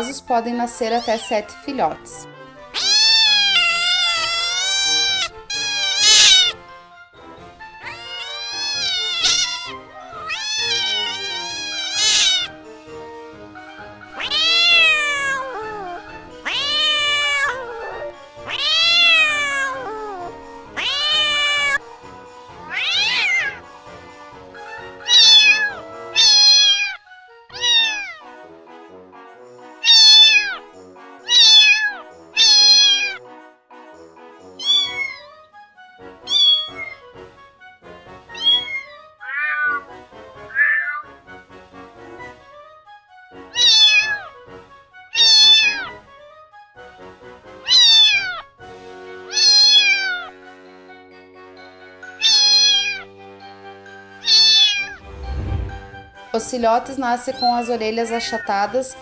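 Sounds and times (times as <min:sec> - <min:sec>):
background music with sustained notes: 0:00.0 - 0:59.0
cat meowing: 0:00.9 - 0:01.4, 0:02.7 - 0:06.6, 0:07.8 - 0:12.6, 0:14.0 - 0:21.8, 0:22.6 - 0:23.6, 0:25.0 - 0:28.2, 0:29.8 - 0:30.6, 0:31.2 - 0:33.2, 0:34.6 - 0:35.4, 0:36.2 - 0:37.1, 0:38.3 - 0:39.9, 0:40.5 - 0:41.1, 0:43.5 - 0:44.4, 0:45.1 - 0:46.0, 0:47.6 - 0:48.5, 0:49.3 - 0:50.3, 0:52.0 - 0:53.0, 0:54.2 - 0:55.1.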